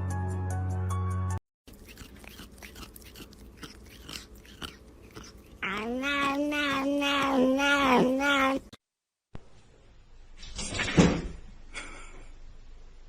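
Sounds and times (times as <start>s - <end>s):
pet chewing: 1.7s - 8.6s
wavering animal cry: 3.8s - 8.7s.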